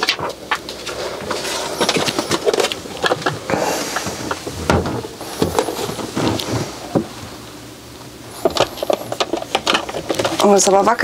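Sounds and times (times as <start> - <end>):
appliance clicks and clatter: 8.4 - 11.0.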